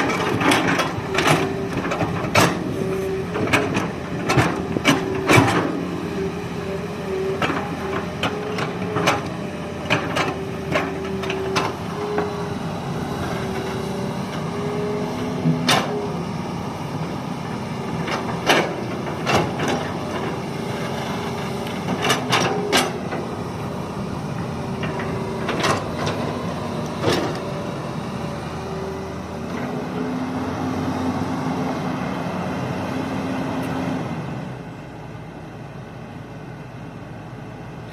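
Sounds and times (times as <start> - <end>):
excavator engine whine: 0.0 - 37.9.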